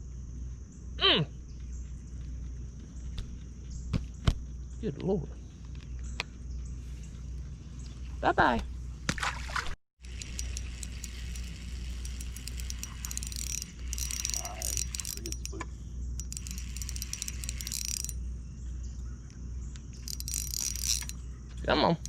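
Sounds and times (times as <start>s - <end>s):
fishing reel whirring and clicking: 10.0s - 15.6s, 16.2s - 18.2s, 19.9s - 21.2s.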